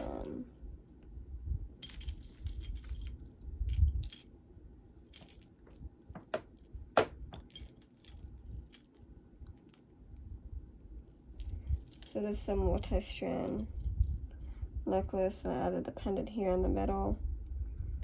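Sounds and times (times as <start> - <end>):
beads and chain jingling: 0.0 - 9.0, 11.2 - 15.2
rustling: 0.0 - 9.9, 11.0 - 15.1.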